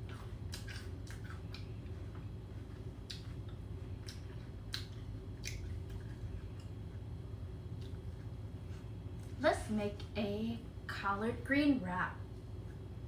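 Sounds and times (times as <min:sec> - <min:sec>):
crisp chewing crunches: 0:00.0 - 0:07.1
steady low hum: 0:00.0 - 0:13.0.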